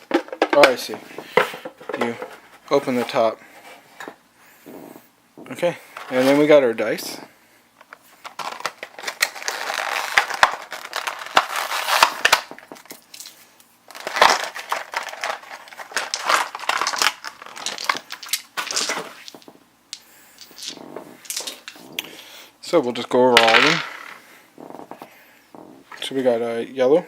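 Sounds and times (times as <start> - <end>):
plastic packaging crinkling: 8.0 - 22.2
dice clicking together: 16.9 - 22.1.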